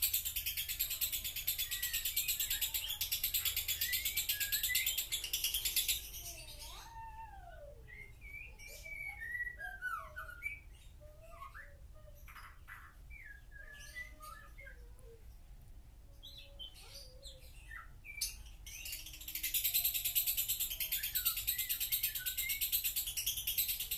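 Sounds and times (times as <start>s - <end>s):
lovebird singing: 0.0s - 15.5s, 16.1s - 23.9s.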